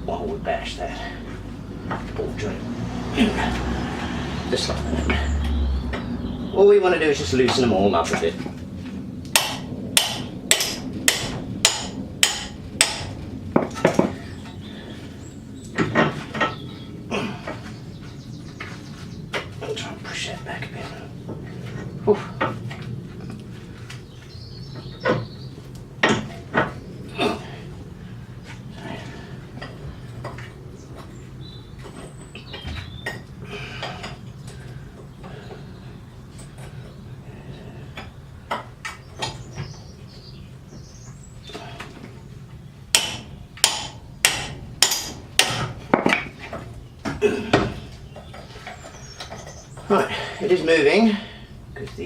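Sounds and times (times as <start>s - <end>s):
hammer striking metal: 9.3s - 13.2s, 42.9s - 46.1s.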